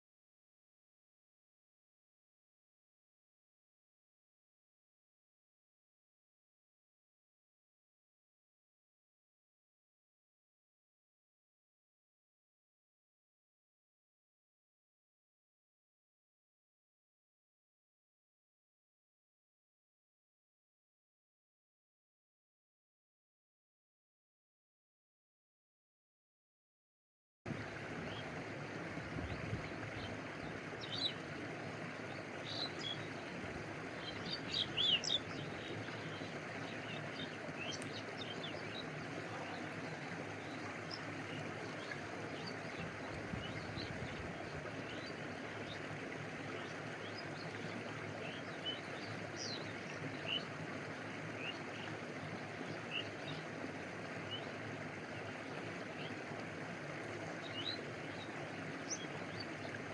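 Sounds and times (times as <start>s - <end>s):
stream flowing: 27.5s - 59.9s.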